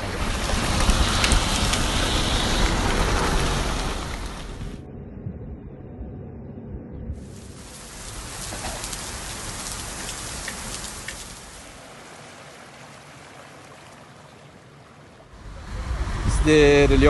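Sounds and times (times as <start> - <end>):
rain falling: 0.0 - 4.8, 7.2 - 17.0.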